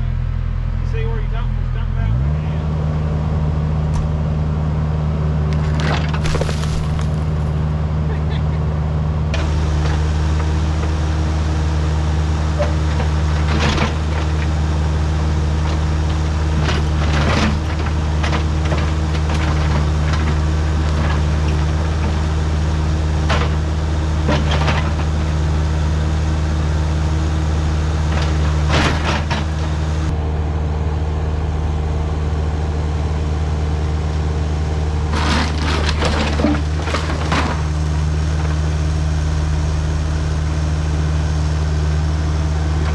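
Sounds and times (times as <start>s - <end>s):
diesel engine running: 0.0s - 42.9s
wooden debris breaking: 5.6s - 7.6s, 35.1s - 37.7s.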